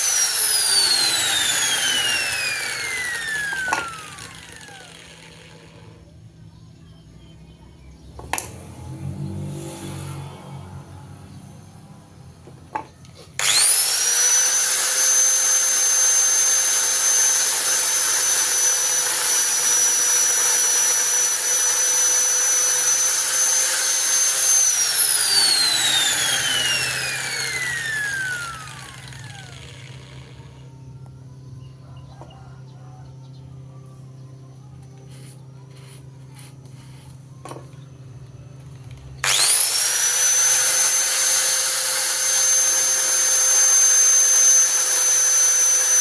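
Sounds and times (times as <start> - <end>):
electric hand planer whining: 0.0 - 6.0, 12.7 - 31.2, 39.2 - 46.0.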